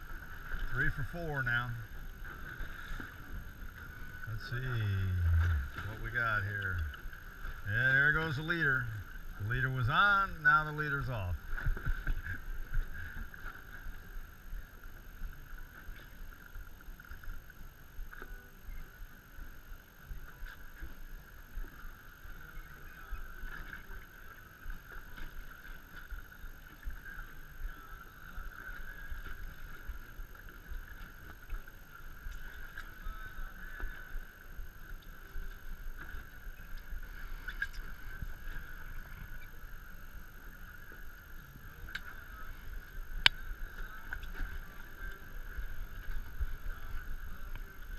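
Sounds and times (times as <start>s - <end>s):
high-pitched hum: 0.0s - 11.6s
water and wind against hull: 0.0s - 47.9s
faint ticks: 2.4s - 7.6s, 34.8s - 46.8s.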